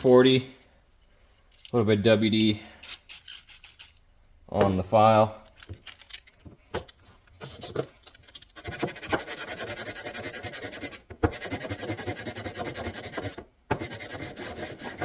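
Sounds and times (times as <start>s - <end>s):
sandpaper scratching on steel: 8.4s - 15.0s.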